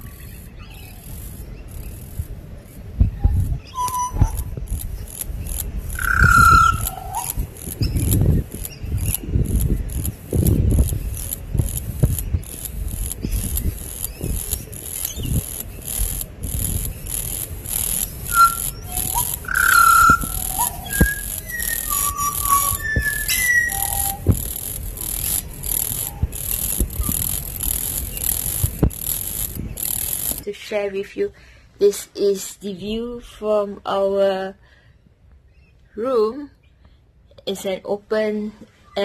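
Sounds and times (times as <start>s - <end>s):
birds whistling calls: 0.0s - 30.4s
insects chirring: 0.0s - 30.5s
low rumbles: 0.0s - 30.6s.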